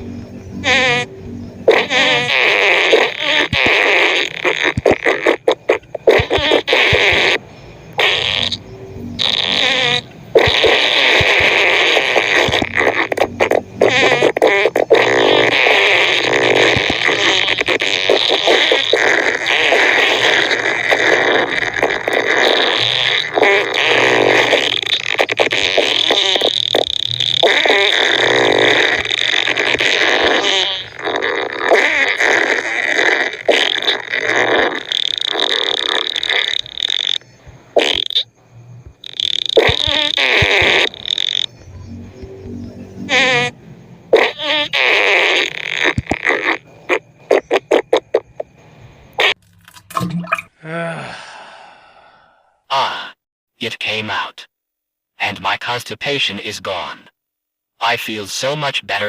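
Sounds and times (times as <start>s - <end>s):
fart sound effect: 0.0s - 50.5s.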